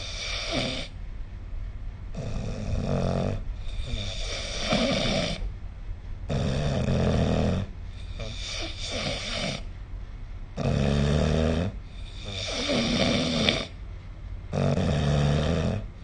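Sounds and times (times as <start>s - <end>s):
person snoring: 0.0s - 0.9s, 2.2s - 5.5s, 6.3s - 9.7s, 10.6s - 13.7s
steady low hum: 0.0s - 16.0s.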